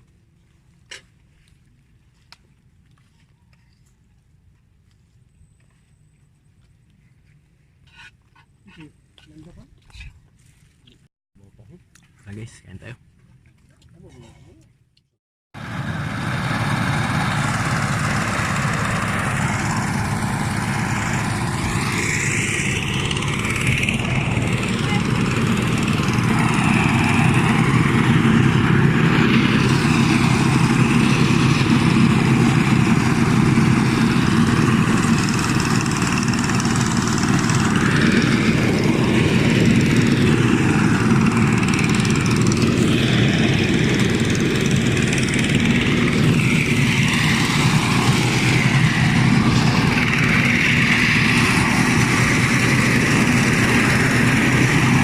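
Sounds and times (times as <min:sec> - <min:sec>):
small engine running: 0:15.6 - 0:55.0.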